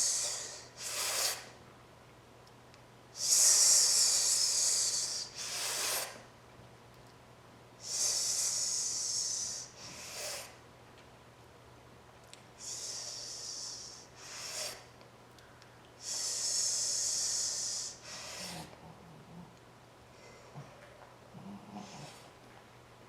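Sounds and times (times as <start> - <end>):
person hissing through teeth: 0.0 - 1.6, 3.2 - 6.2, 7.8 - 10.6, 12.6 - 14.9, 16.0 - 18.7
person sucking air in sharply: 0.0 - 1.6, 3.2 - 6.2, 7.8 - 10.6, 12.6 - 14.9, 16.0 - 18.7.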